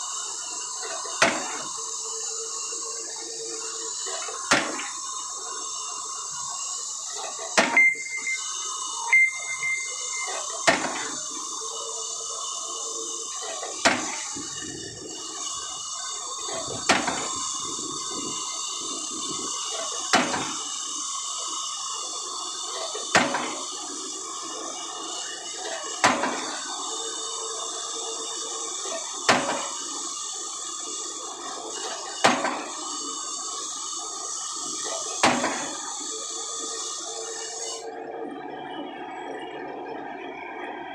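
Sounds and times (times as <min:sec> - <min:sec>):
pile-driving hammer blows: 0:07.6 - 0:08.5.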